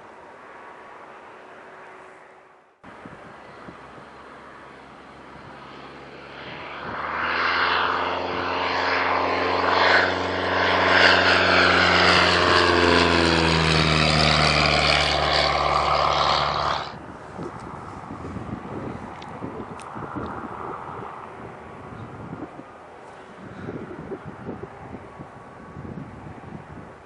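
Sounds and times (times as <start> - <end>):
propeller aircraft passing: 0.0 - 27.0
rough wind noise: 6.4 - 27.0.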